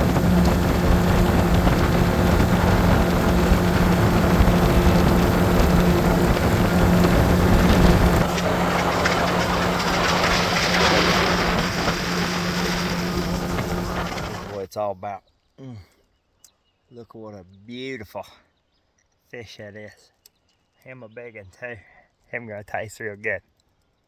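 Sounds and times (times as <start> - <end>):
wind on microphone: 0.0 - 14.5
motor humming: 0.0 - 14.6.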